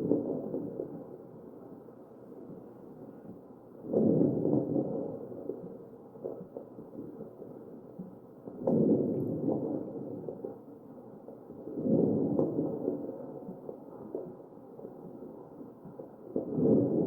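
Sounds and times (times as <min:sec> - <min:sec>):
crackling pops: 0:08.5 - 0:10.6.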